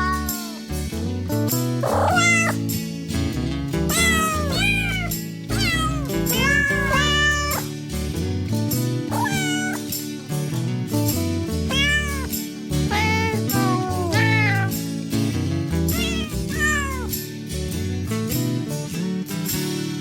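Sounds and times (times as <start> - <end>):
cat meowing: 0.0 - 0.7, 1.8 - 2.6, 3.9 - 7.7, 9.1 - 9.9, 11.7 - 12.3, 12.9 - 14.8, 15.9 - 17.2
background music low chords: 0.0 - 19.4.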